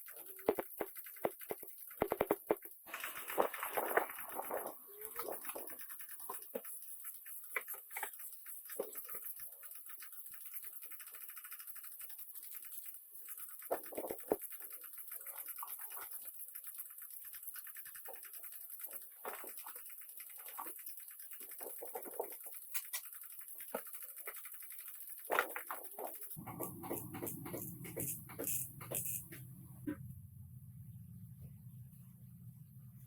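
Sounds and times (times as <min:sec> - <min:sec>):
scratchy rubbing on hard surface: 0:25.4 - 0:29.4.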